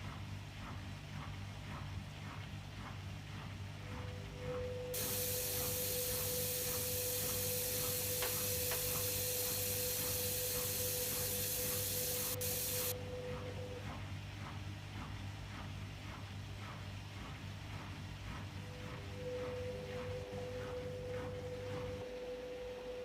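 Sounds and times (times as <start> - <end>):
washing machine hum and whine: 0.0 - 23.0
faint regular ticking: 5.0 - 12.9
water rushing into washing machine: 5.0 - 12.9.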